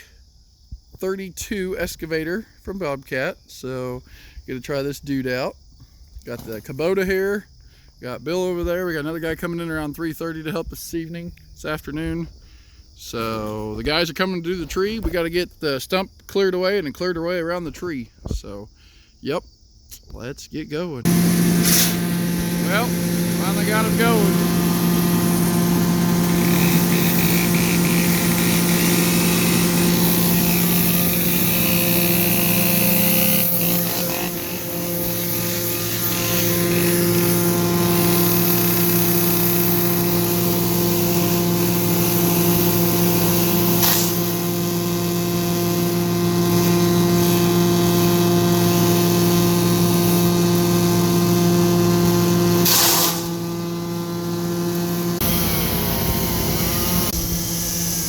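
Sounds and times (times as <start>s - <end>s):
excavator diesel engine running: 21.1s - 39.2s, 53.3s - 58.0s.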